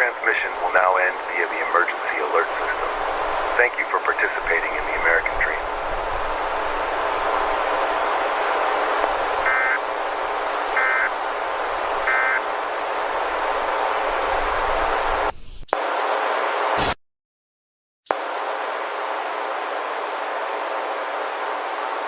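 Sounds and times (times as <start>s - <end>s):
harsh static burst: 0.0s - 17.0s
radio static hiss: 0.0s - 17.0s, 18.1s - 22.0s.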